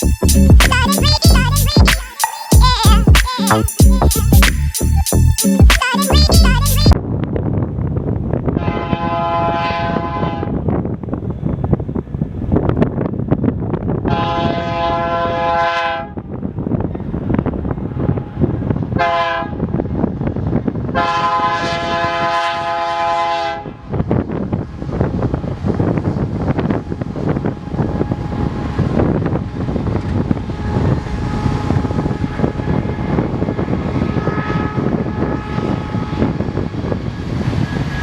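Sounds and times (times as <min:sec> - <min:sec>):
passing train rumble: 0:06.3 - 0:38.0
locomotive air horn chord: 0:14.1 - 0:16.1, 0:21.0 - 0:23.8, 0:30.5 - 0:36.4.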